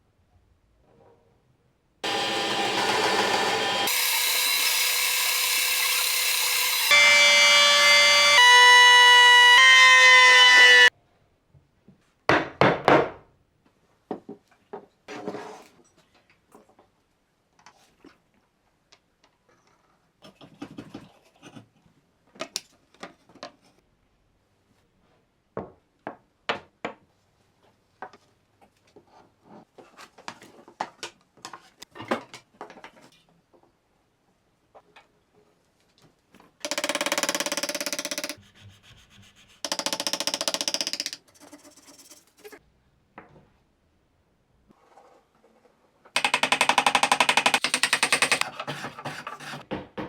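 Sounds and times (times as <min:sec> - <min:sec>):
wood scraping: 0:47.6 - 0:49.6.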